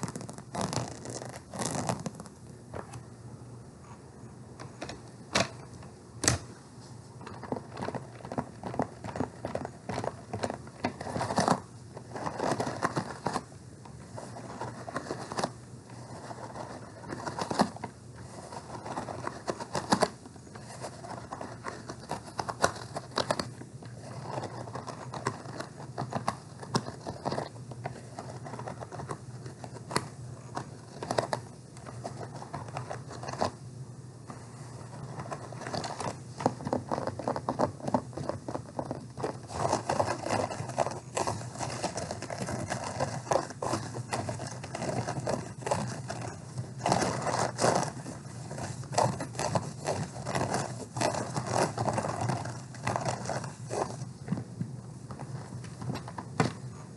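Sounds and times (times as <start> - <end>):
tapping and scratching on purse: 0.0 - 3.0, 7.2 - 33.6, 34.3 - 56.9.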